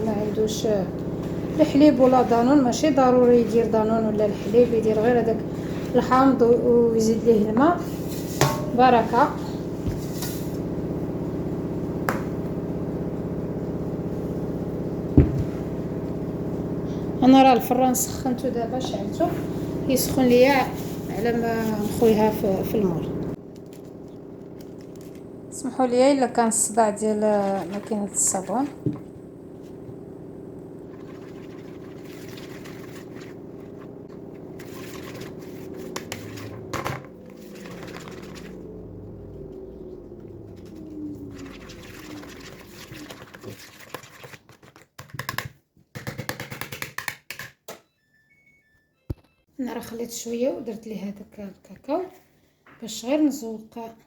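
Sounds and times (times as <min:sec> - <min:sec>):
washing machine humming: 0:00.0 - 0:43.9
low thump: 0:15.2 - 0:15.5.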